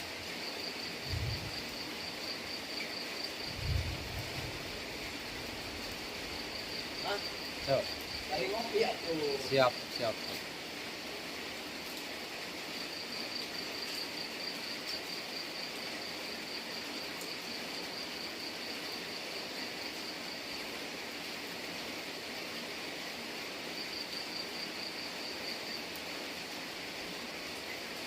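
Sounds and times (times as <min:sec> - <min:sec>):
steady rain hiss: 0:00.0 - 0:28.0
insect trilling: 0:00.6 - 0:10.3.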